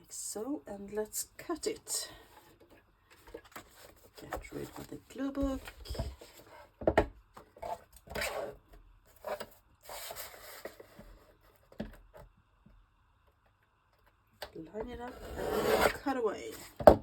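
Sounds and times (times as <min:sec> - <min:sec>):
paper rustling and rubbing: 0:03.1 - 0:06.6, 0:09.2 - 0:11.5.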